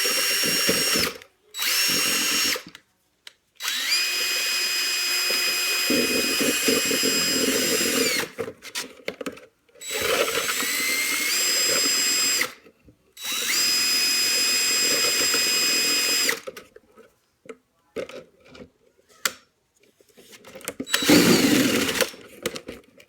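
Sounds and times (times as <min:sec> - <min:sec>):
electric drill spinning mixing paddle: 0:00.0 - 0:02.7, 0:03.6 - 0:08.4, 0:09.8 - 0:12.6, 0:13.2 - 0:16.5, 0:20.9 - 0:22.2.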